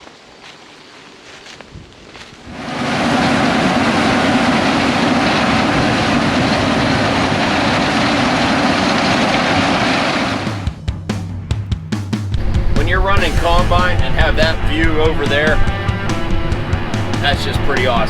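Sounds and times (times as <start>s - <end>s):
combine harvester running: 2.5s - 10.8s, 12.4s - 18.0s.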